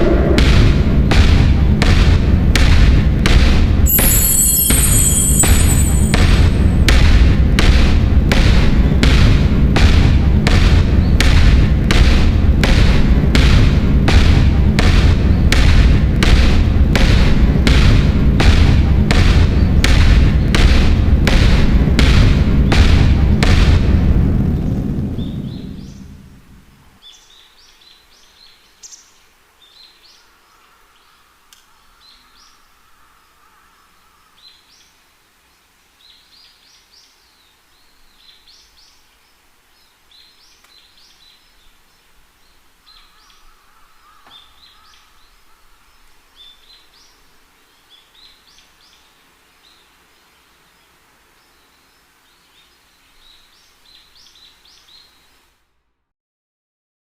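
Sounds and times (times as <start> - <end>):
outdoor background noise: 0.0 - 56.1
faint birds chirping: 26.9 - 55.4.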